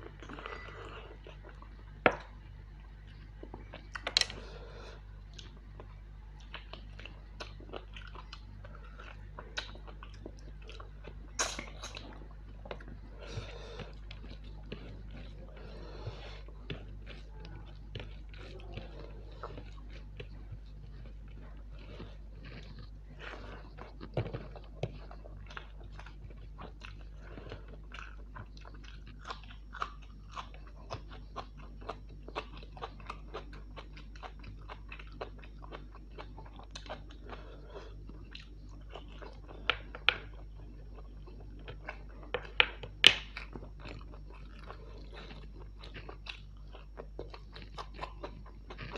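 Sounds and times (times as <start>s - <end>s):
wet chewing and mouth clicks: 0.0s - 48.9s.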